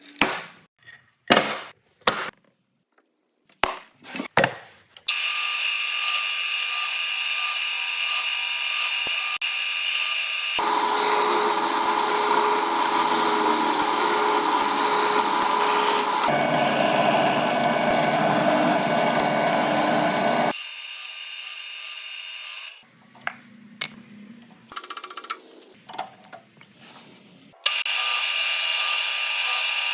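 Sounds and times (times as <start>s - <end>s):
power tool cutting wood: 5.1s - 22.8s, 27.6s - 29.9s.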